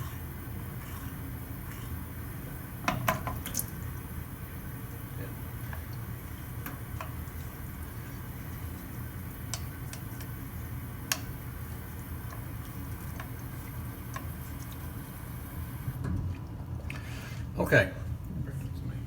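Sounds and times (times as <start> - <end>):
steady low hum: 0.0 - 19.0
steel clicking on water stone: 9.5 - 10.4, 11.0 - 11.3.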